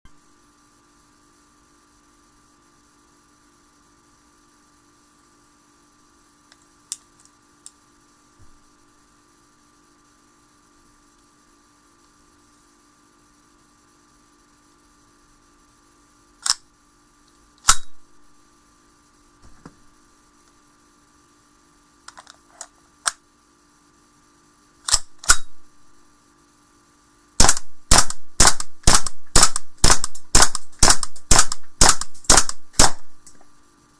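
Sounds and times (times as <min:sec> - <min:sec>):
faint steady hum: 0:00.1 - 0:33.9
airsoft pistol shots: 0:17.6 - 0:18.1, 0:24.9 - 0:25.6, 0:27.4 - 0:33.3.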